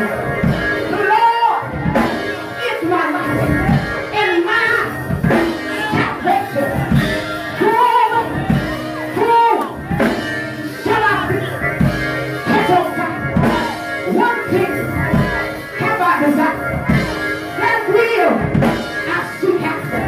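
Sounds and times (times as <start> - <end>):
church band with drums and guitar: 0.0 - 20.0
person singing: 0.0 - 20.0.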